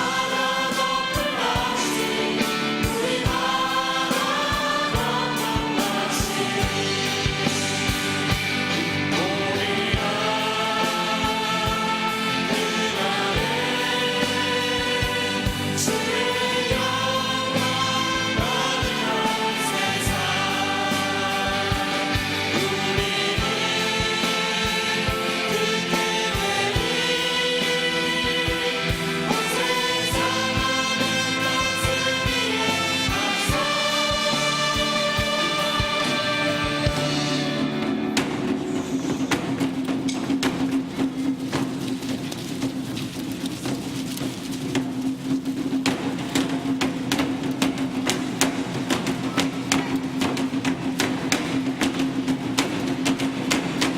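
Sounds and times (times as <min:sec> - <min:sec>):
choir singing: 0:00.0 - 0:40.7
drum beat and cymbals: 0:00.0 - 0:42.4, 0:44.4 - 0:53.9
band playing: 0:00.0 - 0:42.5.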